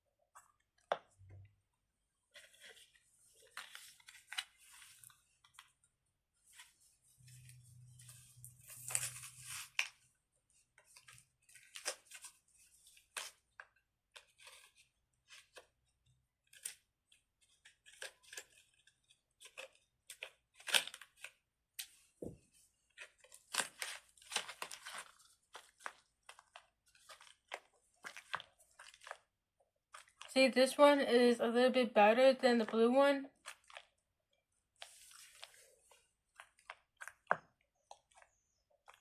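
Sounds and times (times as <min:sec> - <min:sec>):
fidget toy rustling and crinkling: 0:16.5 - 0:30.8, 0:32.3 - 0:39.0.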